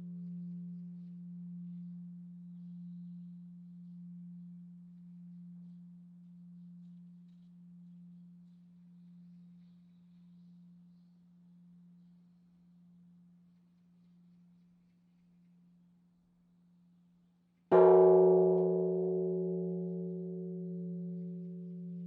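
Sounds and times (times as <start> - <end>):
deep temple bell hum: 0.0 - 10.8, 17.7 - 22.0.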